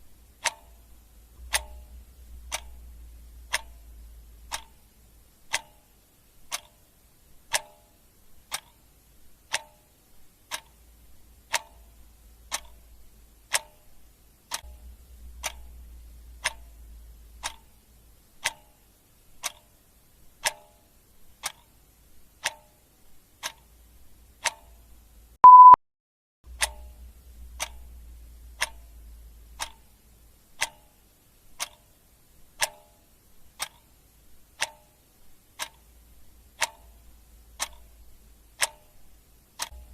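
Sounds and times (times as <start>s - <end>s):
clock ticking: 0.0s - 25.8s, 26.5s - 39.9s
short high beep: 25.4s - 25.8s.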